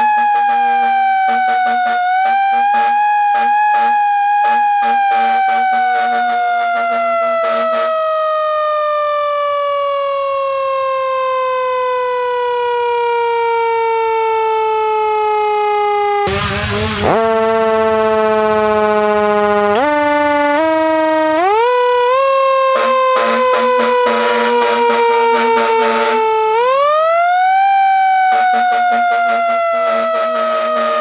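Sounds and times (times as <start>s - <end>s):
siren winding down: 0.0s - 31.0s
sudden loud burst: 16.3s - 19.4s
low pulsing tone: 16.3s - 20.1s.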